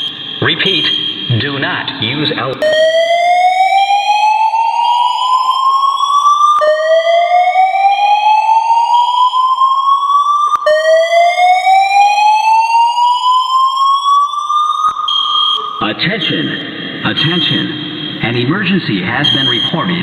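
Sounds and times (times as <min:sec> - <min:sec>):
fire alarm whoop tone: 0:00.0 - 0:01.7, 0:02.6 - 0:20.0.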